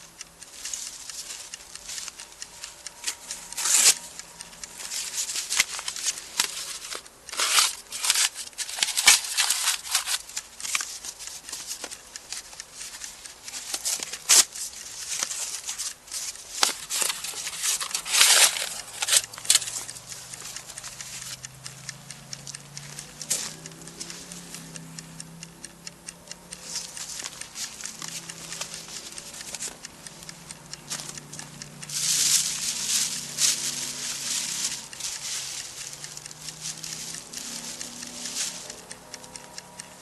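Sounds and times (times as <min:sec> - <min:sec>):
sharp clicks: 0:00.0 - 0:40.0
rustling and crinkling: 0:00.4 - 0:21.4, 0:30.8 - 0:39.2.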